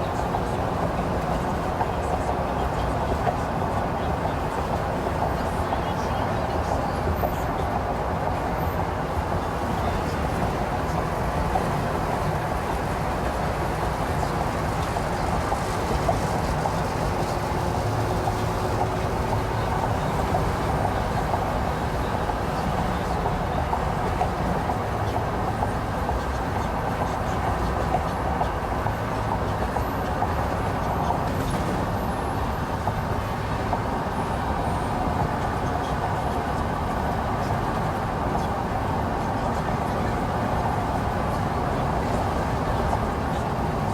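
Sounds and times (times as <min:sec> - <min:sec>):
vehicle road noise rumble: 0:00.0 - 0:43.9.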